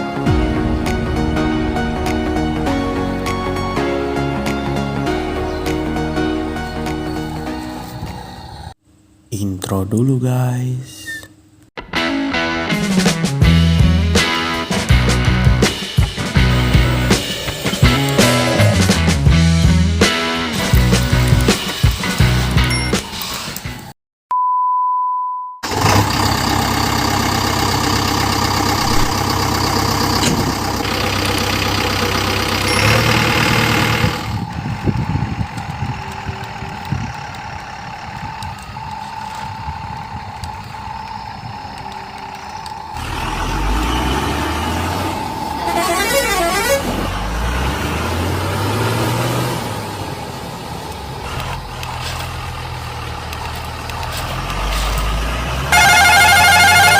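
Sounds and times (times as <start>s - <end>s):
short steady beep: 24.3s - 25.6s
toy truck engine: 25.6s - 49.1s, 49.8s - 56.9s
truck horn: 32.6s - 34.3s, 45.5s - 47.6s, 55.6s - 56.9s.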